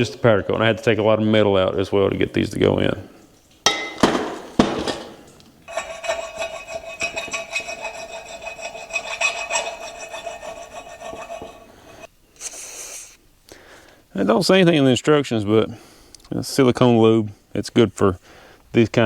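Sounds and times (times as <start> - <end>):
knocks: 3.7 - 5.2.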